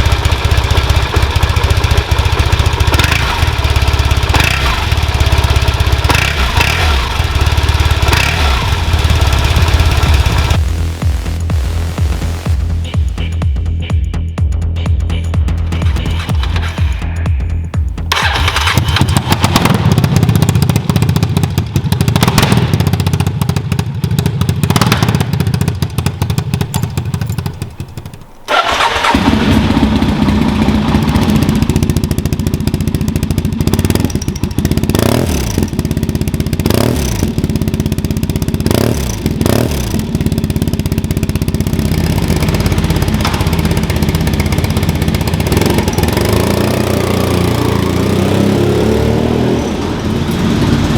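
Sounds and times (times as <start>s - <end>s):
motorcycle throttle blips: 0.0s - 14.2s, 15.1s - 50.9s
motorcycle engine idling: 0.0s - 50.9s.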